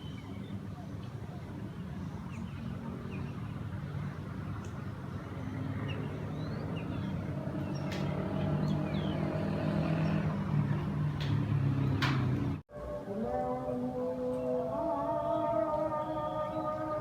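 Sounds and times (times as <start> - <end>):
vehicle engine running: 3.9 - 12.6.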